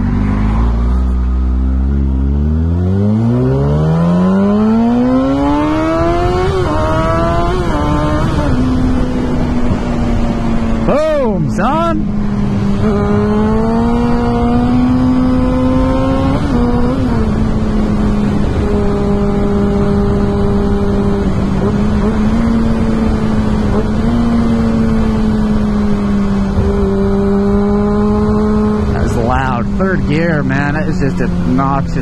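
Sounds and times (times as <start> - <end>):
motorcycle engine revving: 0.0 - 32.0
wind rush: 5.1 - 15.5.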